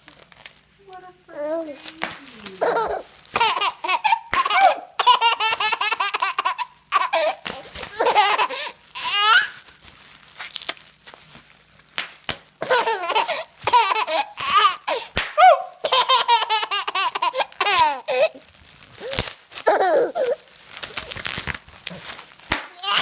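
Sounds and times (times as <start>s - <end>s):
baby laughing: 2.4s - 9.6s, 12.6s - 18.4s, 19.0s - 20.4s, 22.8s - 23.0s.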